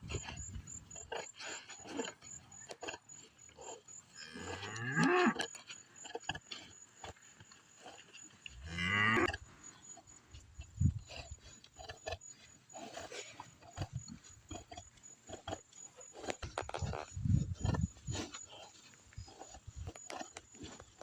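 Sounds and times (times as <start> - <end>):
cow mooing: 4.2 - 5.4, 8.6 - 9.4.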